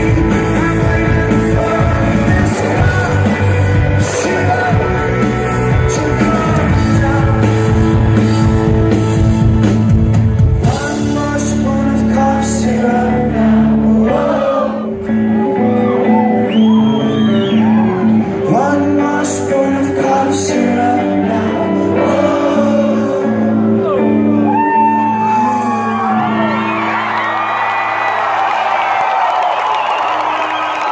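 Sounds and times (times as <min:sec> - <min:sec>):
person singing: 0:00.0 - 0:09.6, 0:10.5 - 0:27.0
rock band playing: 0:00.0 - 0:28.9
shouts: 0:23.8 - 0:30.9.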